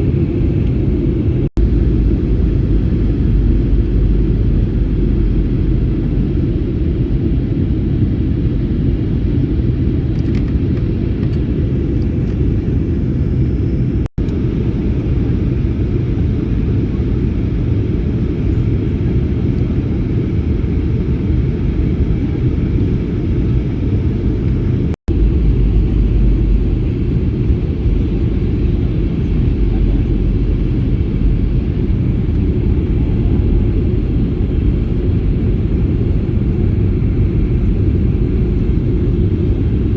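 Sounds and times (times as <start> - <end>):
airliner cabin rumble: 0.0 - 39.9.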